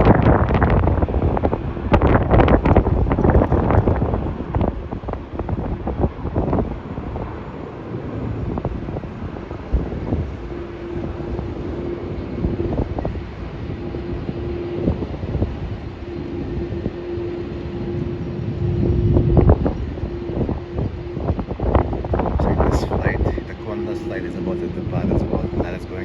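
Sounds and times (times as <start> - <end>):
low rumble: 0.0 - 26.0
steady hum: 0.0 - 26.0
wind buffeting microphone: 0.0 - 26.0.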